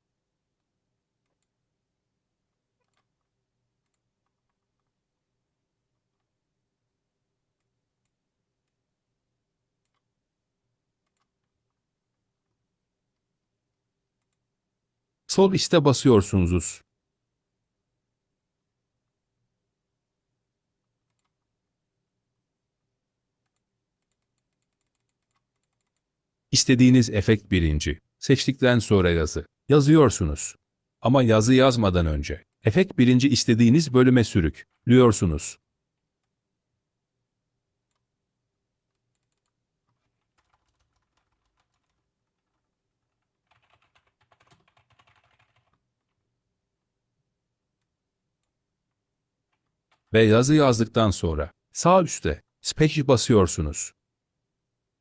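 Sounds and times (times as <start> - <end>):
faint keyboard typing: 0.5 - 1.7, 2.5 - 5.3, 5.9 - 6.4, 7.5 - 8.9, 9.8 - 10.2, 10.9 - 13.5, 14.1 - 14.5, 20.8 - 21.6, 23.4 - 26.2, 37.8 - 38.2, 38.8 - 46.4, 47.7 - 50.2
keyboard typing clicks: 11.0 - 11.6, 21.0 - 21.4, 23.4 - 26.1, 38.9 - 45.8.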